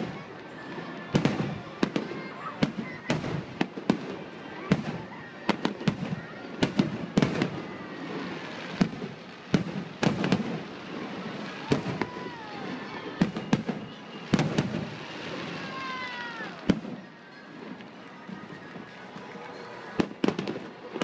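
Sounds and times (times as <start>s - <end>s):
firework bangs: 0.0s - 21.0s
firework crackling: 0.0s - 21.0s.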